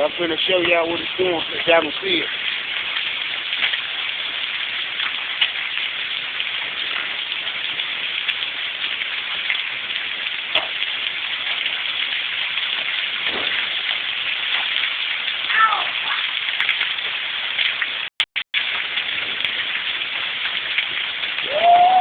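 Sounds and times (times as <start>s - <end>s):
hailstones knocking: 0.0s - 18.0s, 18.6s - 22.0s
heavy rain hissing: 0.0s - 18.0s, 18.7s - 22.0s.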